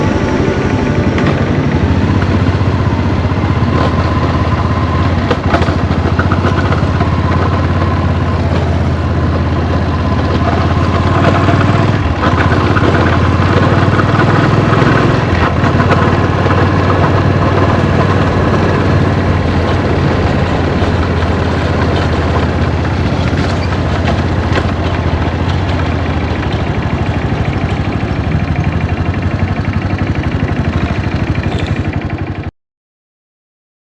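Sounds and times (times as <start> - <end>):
abnormal mechanical noise: 0.0 - 32.4
motorcycle engine running: 0.0 - 32.5.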